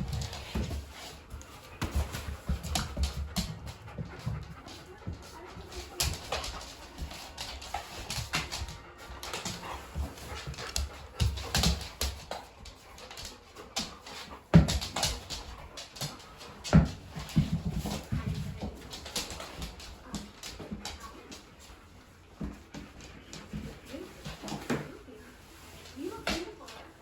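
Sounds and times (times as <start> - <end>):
dogs panting: 0.0 - 27.0.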